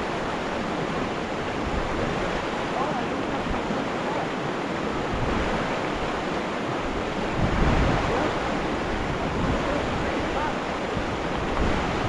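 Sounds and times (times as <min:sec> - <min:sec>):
river water rushing: 0:00.0 - 0:12.0
wind buffeting microphone: 0:00.0 - 0:12.0.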